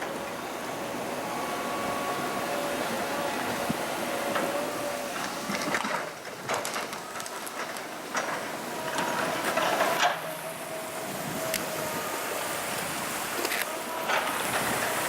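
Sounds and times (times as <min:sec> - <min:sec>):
excavator engine and hydraulic whine: 0:00.0 - 0:15.0.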